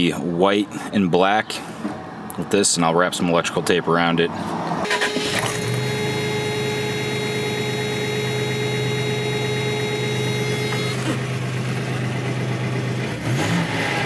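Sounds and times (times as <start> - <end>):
car engine idling: 4.9 - 13.4.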